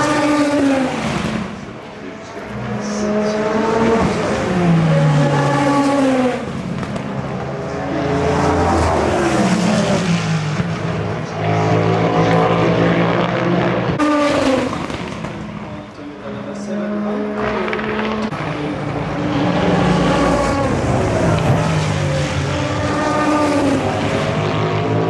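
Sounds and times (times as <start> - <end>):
race cars passing at speed: 0.0 - 25.0.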